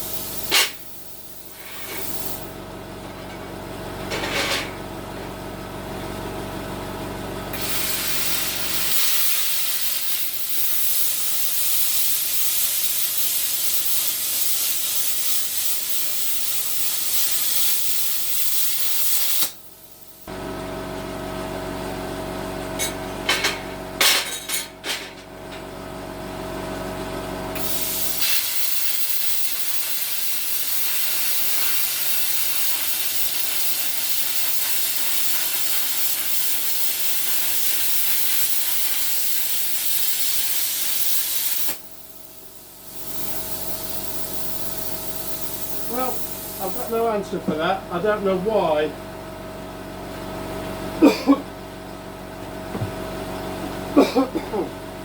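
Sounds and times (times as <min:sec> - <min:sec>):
plasma cutter hissing: 0:00.0 - 0:02.6, 0:07.5 - 0:20.3, 0:27.6 - 0:48.3.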